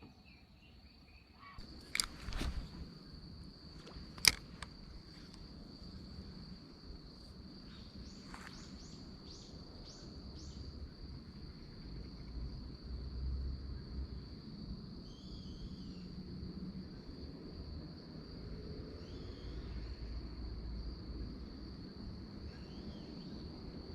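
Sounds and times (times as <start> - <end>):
crickets trilling: 0.0 - 23.9
sharp click: 1.6 - 2.9, 3.8 - 5.4.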